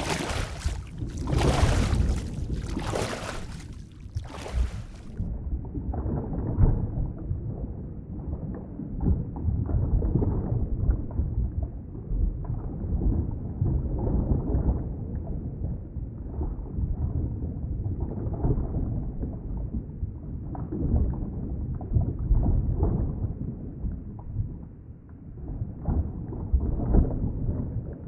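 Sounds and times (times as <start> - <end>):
muffled underwater water rumble: 0.0 - 7.2.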